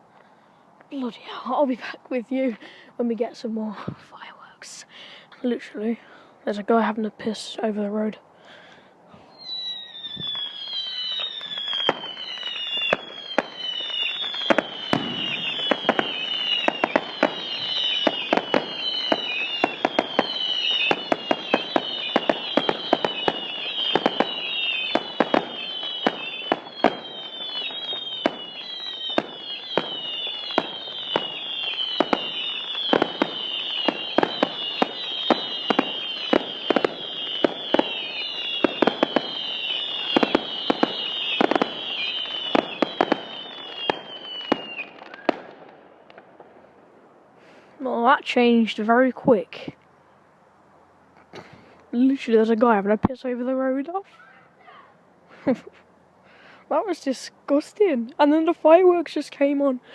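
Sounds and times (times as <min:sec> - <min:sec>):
fireworks whistling: 0:09.2 - 0:46.5
fireworks bangs: 0:09.4 - 0:47.5.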